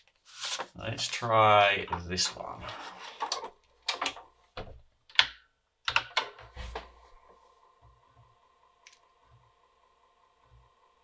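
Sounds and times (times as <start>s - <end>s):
disc drive humming: 6.5s - 11.0s.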